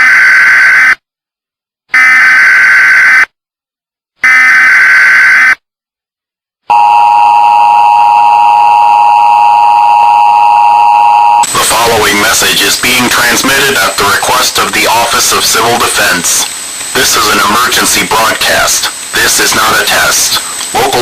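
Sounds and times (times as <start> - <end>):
two-tone attention signal: 6.7 - 11.5.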